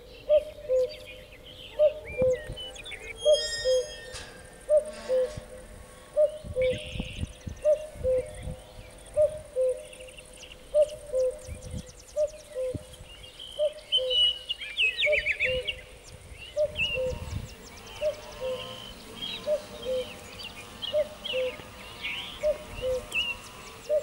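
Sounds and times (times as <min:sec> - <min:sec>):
high bird chirps and trills: 0:00.0 - 0:24.0.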